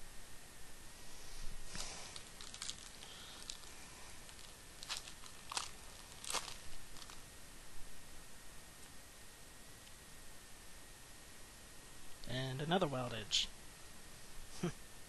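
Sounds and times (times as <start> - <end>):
foil wrapper crinkling: 1.7 - 7.2.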